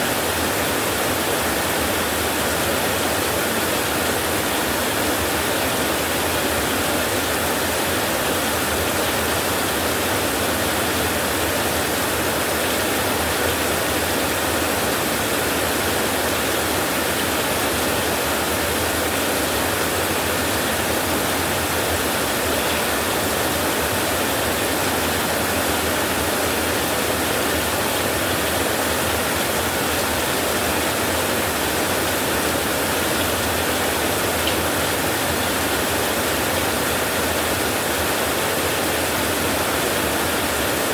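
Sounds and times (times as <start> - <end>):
heavy rain on a tin roof: 0.0 - 40.9.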